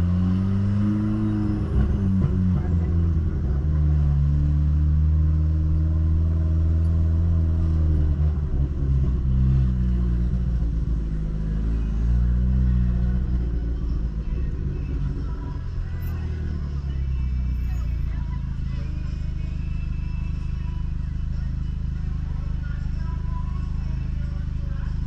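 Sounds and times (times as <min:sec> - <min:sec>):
car exhaust rumbling: 0:00.0 - 0:20.0.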